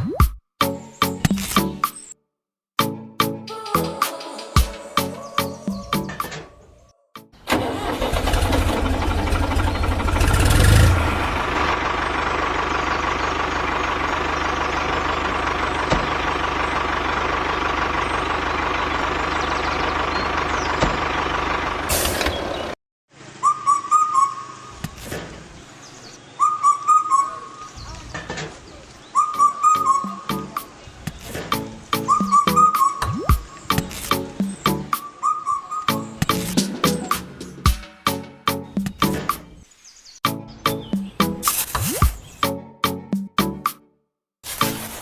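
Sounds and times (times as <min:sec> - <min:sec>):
truck engine running: 0:07.4 - 0:22.8, 0:35.9 - 0:39.4.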